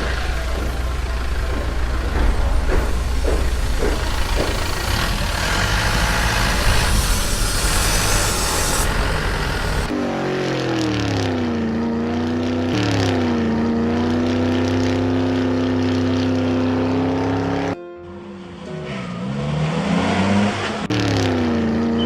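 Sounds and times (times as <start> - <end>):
vehicle engine rumbling: 0.0 - 10.0.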